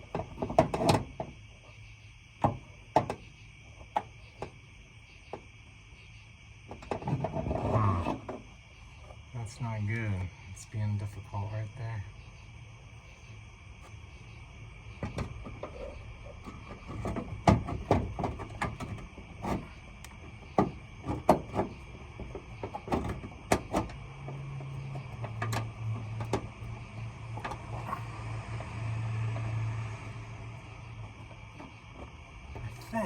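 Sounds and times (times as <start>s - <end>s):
steady low hum: 7.5s - 33.0s.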